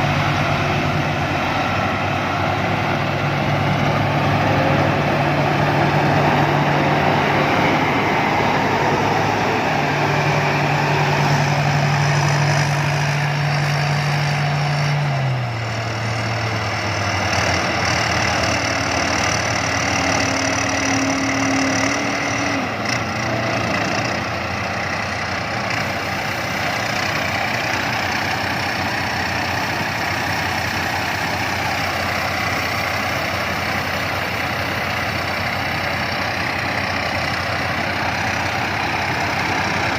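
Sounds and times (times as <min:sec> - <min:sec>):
combine harvester diesel engine: 0:00.0 - 0:39.9.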